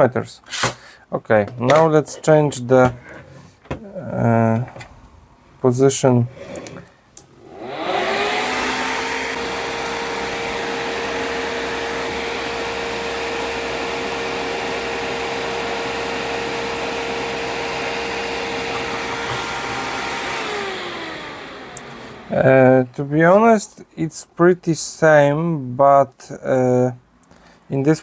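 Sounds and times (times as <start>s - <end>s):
fan whirring with rushing airflow: 6.5s - 23.1s.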